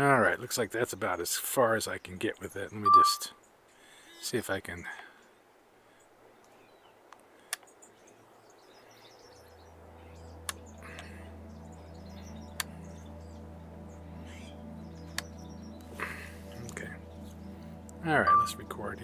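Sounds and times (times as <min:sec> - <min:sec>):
small birds chirping: 0:00.0 - 0:19.0
low steady hum: 0:08.0 - 0:19.0
sharp clicks: 0:12.6 - 0:12.8.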